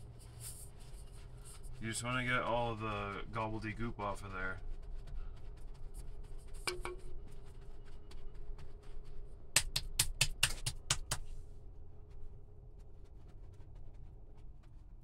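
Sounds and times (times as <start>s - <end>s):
steady low hum: 0.0s - 15.0s
sharp handling clicks and taps: 6.6s - 7.1s.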